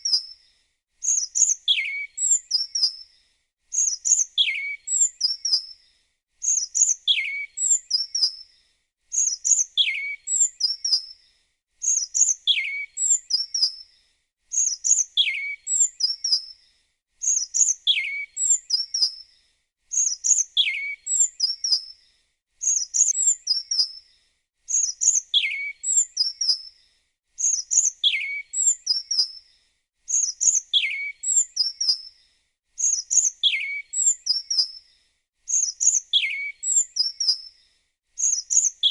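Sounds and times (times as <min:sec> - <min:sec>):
songbird chirping and whistling: 0:00.0 - 0:00.4, 0:01.0 - 0:03.1, 0:03.7 - 0:05.8, 0:06.4 - 0:08.5, 0:09.1 - 0:11.2, 0:11.8 - 0:13.9, 0:14.5 - 0:16.6, 0:17.2 - 0:19.3, 0:19.9 - 0:22.0, 0:22.6 - 0:24.1, 0:24.7 - 0:26.8, 0:27.4 - 0:29.4, 0:30.1 - 0:32.2, 0:32.8 - 0:34.9, 0:35.5 - 0:37.6, 0:38.2 - 0:38.9.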